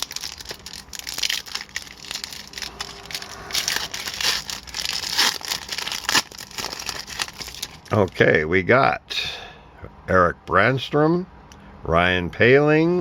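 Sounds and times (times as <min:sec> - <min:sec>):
foil wrapper tearing and crinkling: 0:00.0 - 0:08.2.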